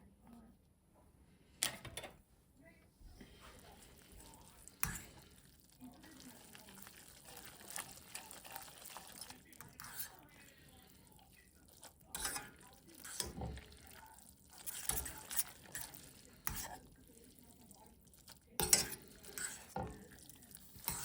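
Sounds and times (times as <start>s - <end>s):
dishes and utensils clinking: 12.1s - 16.8s, 18.6s - 21.0s.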